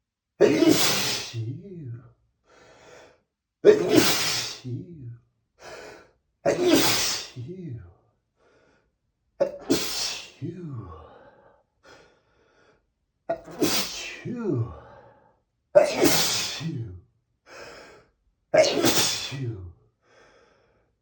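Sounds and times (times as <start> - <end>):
man sneezing: 0.4 - 1.9, 3.6 - 5.1, 6.5 - 7.8, 9.4 - 11.0, 13.3 - 15.0, 15.8 - 17.0, 18.6 - 19.7
faint short breaths: 20.0 - 20.9.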